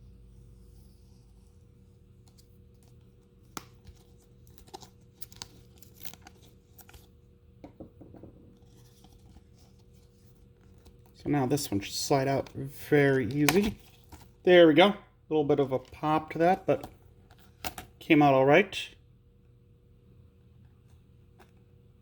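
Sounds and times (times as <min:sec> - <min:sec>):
packaging clicks and crinkles: 0:02.3 - 0:07.2.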